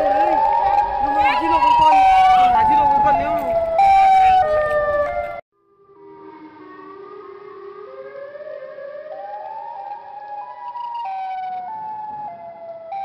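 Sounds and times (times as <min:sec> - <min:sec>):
siren-like wail: 0:00.0 - 0:13.0.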